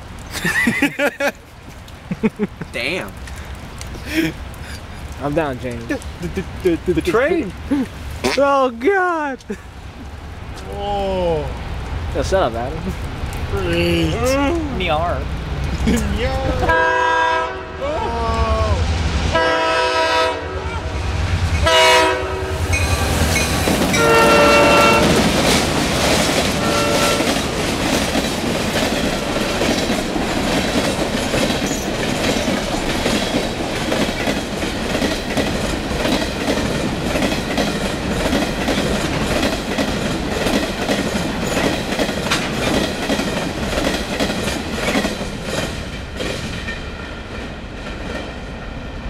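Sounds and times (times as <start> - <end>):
locomotive air horn blasts: 16.7 - 17.8, 19.3 - 21.0, 21.6 - 23.1, 24.0 - 25.2, 26.6 - 27.4
train wheels clickety-clack: 22.7 - 48.8.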